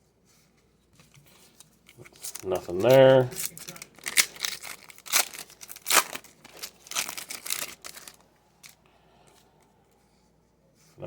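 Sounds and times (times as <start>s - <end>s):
foil wrapper crinkling and tearing: 1.0s - 8.8s.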